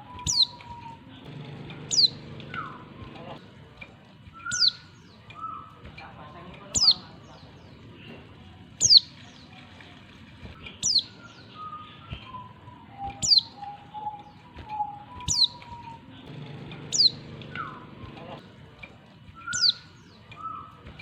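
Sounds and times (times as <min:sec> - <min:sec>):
bird high falling calls: 0:00.0 - 0:03.1, 0:10.6 - 0:18.1, 0:19.4 - 0:20.8
faint lower whistled notes: 0:10.5 - 0:16.1.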